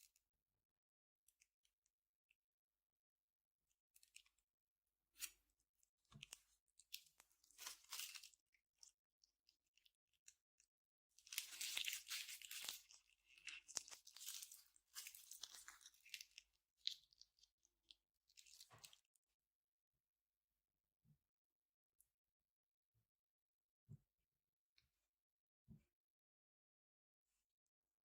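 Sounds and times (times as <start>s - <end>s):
slime crackling and popping: 11.2s - 17.2s.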